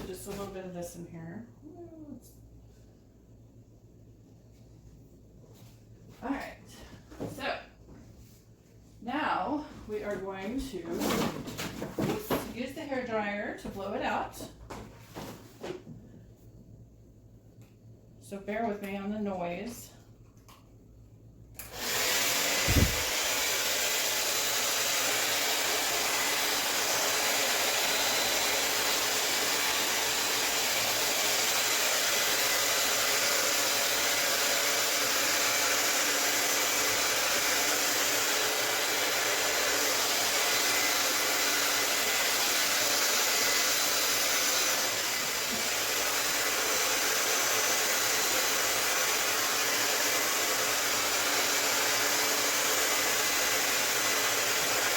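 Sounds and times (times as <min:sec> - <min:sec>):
hair dryer running: 0:21.6 - 0:54.9.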